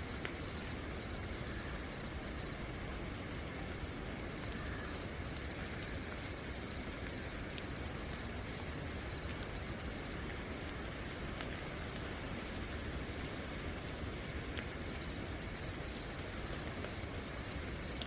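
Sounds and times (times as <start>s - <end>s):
crickets chirping: 0.0s - 18.0s
steady rain falling: 0.0s - 18.0s.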